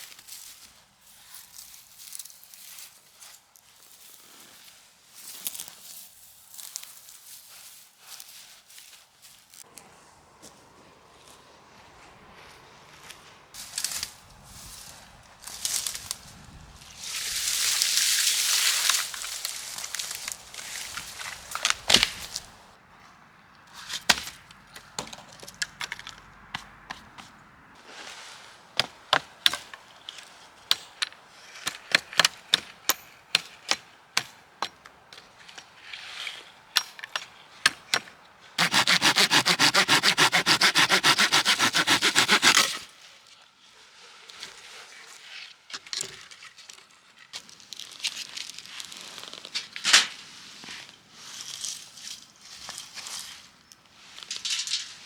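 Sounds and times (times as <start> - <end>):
hatchet chopping firewood: 23.8 - 27.4, 28.8 - 29.8, 30.7 - 35.3, 36.8 - 42.9
loud fast rasping: 38.6 - 42.9.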